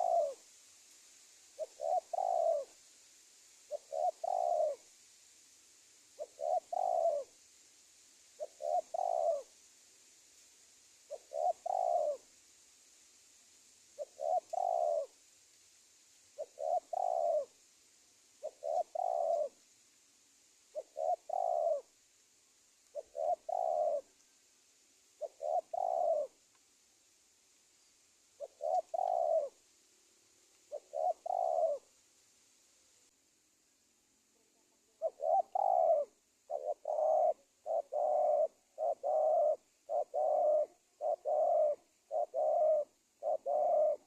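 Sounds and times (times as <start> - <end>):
dove cooing: 0.0 - 0.4, 1.5 - 2.8, 3.7 - 4.9, 6.2 - 7.4, 8.3 - 9.6, 11.1 - 12.3, 14.0 - 15.2, 16.4 - 17.6, 18.4 - 19.6, 20.7 - 22.0, 22.8 - 24.2, 25.2 - 26.4, 28.4 - 29.6, 30.7 - 31.9, 34.3 - 44.0.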